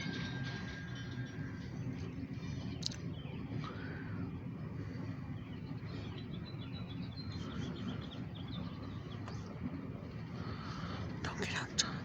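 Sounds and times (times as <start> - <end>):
small birds chirping: 2.0 - 9.7.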